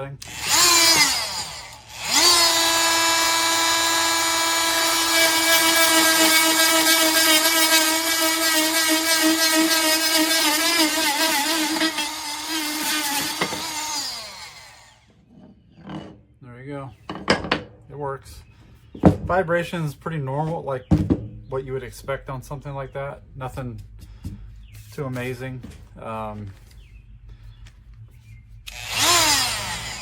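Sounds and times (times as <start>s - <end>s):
oscillating multi-tool whining: 0.2s - 15.2s, 28.6s - 30.0s.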